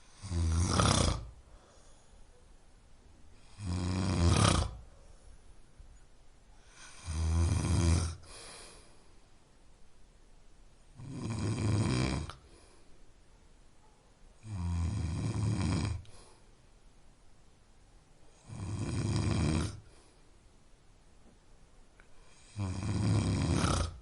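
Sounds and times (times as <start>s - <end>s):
person snoring: 0.0s - 1.4s, 3.4s - 4.8s, 6.6s - 8.9s, 11.0s - 12.6s, 14.4s - 16.4s, 18.3s - 20.0s, 22.2s - 24.0s.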